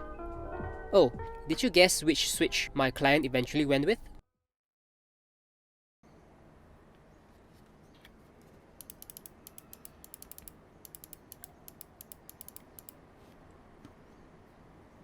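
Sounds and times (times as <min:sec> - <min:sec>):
mechanical keyboard typing clicks: 0:08.8 - 0:13.0.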